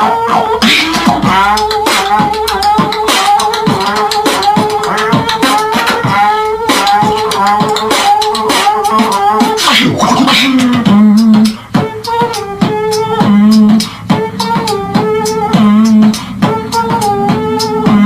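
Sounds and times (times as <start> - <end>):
person beatboxing: 0.0 - 18.0.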